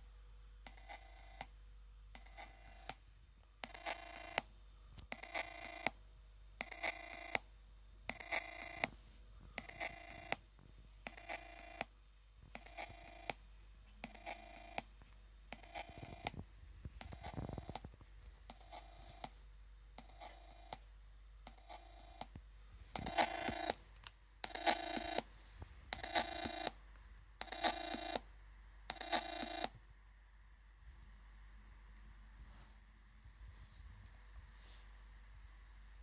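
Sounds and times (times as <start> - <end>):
laptop buzzy ringing noise: 0.7 - 1.5, 2.2 - 3.0, 3.6 - 4.5, 5.1 - 6.0, 6.6 - 7.4, 8.1 - 10.4, 11.0 - 11.9, 12.6 - 13.4, 14.0 - 14.9, 15.5 - 16.4, 17.0 - 19.4, 20.0 - 20.8, 21.5 - 22.4, 23.0 - 23.8, 24.4 - 25.3, 25.9 - 26.8, 27.4 - 28.3, 28.9 - 29.8.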